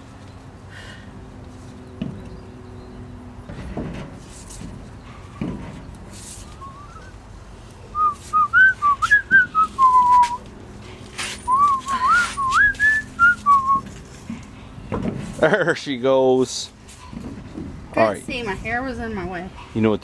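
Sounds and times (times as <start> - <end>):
person whistling a tune: 6.4 - 7.2, 8.0 - 10.4, 11.5 - 13.8.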